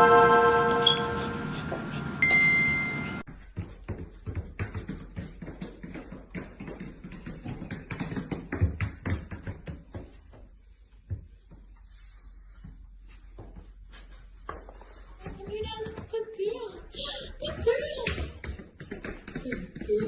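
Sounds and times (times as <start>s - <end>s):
electronic chime: 0.0s - 3.2s.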